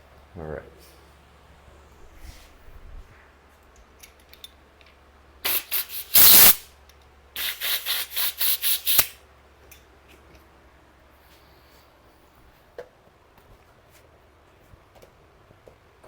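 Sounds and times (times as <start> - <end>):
air hissing from tire valve: 5.4 - 6.6, 7.4 - 9.2.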